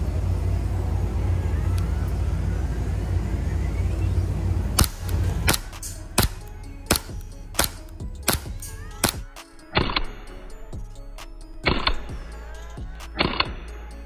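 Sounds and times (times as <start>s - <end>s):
low rumble: 0.0s - 14.0s
airsoft pistol shots: 4.8s - 9.2s.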